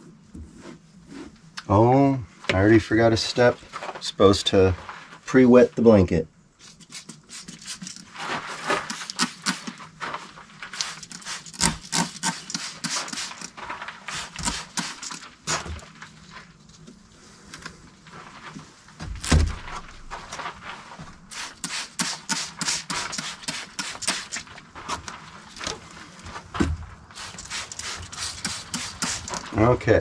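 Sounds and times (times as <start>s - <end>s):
hands scraping and rubbing: 6.6s - 18.9s, 20.1s - 26.5s, 27.1s - 29.9s.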